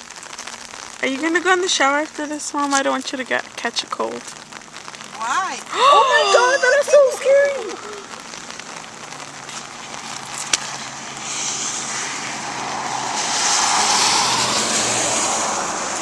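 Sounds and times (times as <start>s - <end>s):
rain falling: 0.0s - 16.0s.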